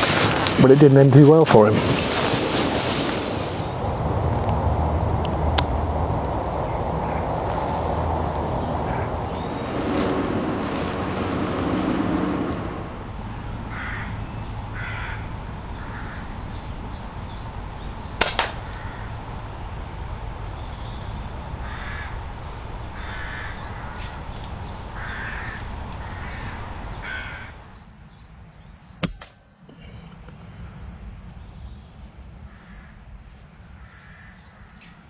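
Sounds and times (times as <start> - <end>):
crows cawing: 6.5 - 12.8, 13.6 - 16.6, 21.6 - 27.8, 32.5 - 33.0, 33.8 - 34.6
sharp cracks: 18.2 - 19.2.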